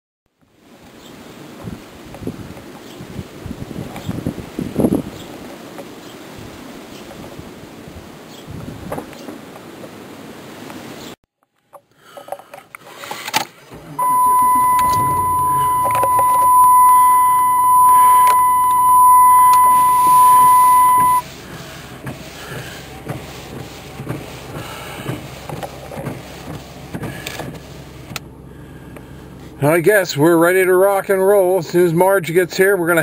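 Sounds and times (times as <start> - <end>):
low vehicle rumble: 13.6 - 30.4
high electronic tone: 14.0 - 21.2.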